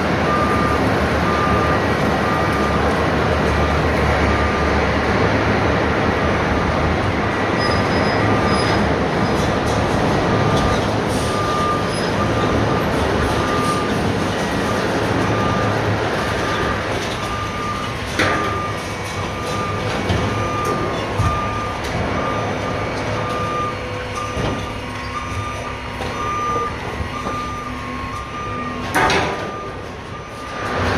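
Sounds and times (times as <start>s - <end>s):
reversing alarm beeping: 0.0s - 4.9s, 7.6s - 8.8s, 10.2s - 30.9s
diesel engine rumble: 0.0s - 30.9s
sharp knocks and clanks: 28.8s - 29.6s.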